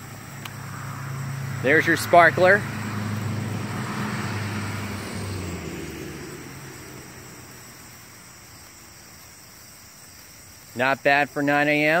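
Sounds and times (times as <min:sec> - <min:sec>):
vehicle driving past: 0:00.0 - 0:08.4.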